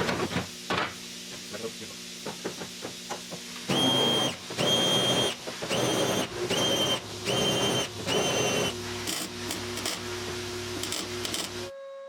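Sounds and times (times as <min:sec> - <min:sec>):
welder crackling: 0:05.8 - 0:11.7.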